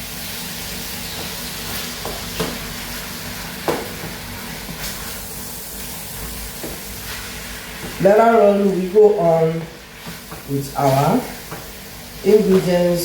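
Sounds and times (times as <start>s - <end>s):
meat sizzling in a frying pan: 0.0s - 13.0s
spoon knocking and scraping pan: 6.6s - 8.1s, 9.6s - 11.8s, 12.4s - 12.8s.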